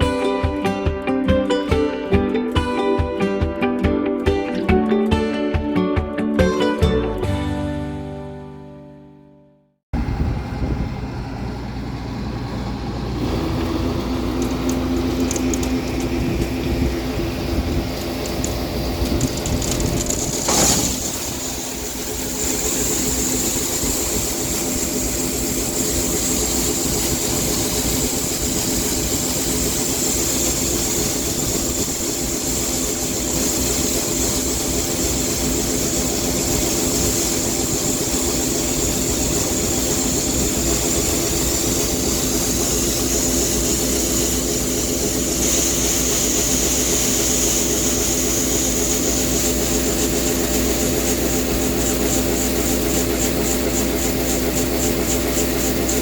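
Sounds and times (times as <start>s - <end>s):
farm machinery engine running: 0.0s - 8.2s, 10.0s - 56.0s
high machine whine: 10.0s - 56.0s
loud clunk: 20.0s - 21.5s.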